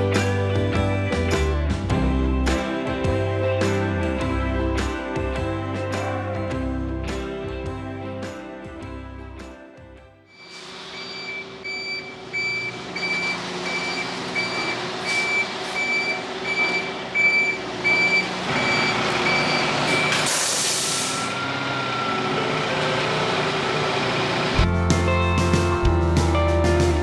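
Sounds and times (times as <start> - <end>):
reverse alarm beeping: 10.3 - 20.3, 20.9 - 22.6
diesel truck engine running: 10.6 - 27.0
air brakes hissing: 15.0 - 16.2, 19.9 - 21.5.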